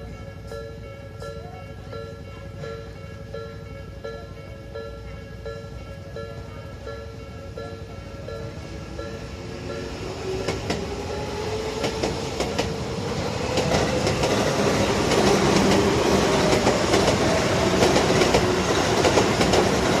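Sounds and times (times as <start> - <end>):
electric train passing: 0.0 - 20.0
wheels clicking over rail joints: 11.8 - 20.0.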